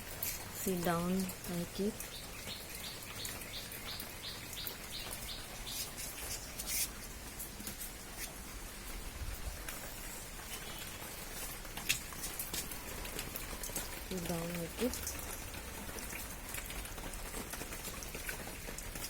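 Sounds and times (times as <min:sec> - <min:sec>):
rain pattering: 0:00.0 - 0:19.0
small bird chirping: 0:01.8 - 0:06.8.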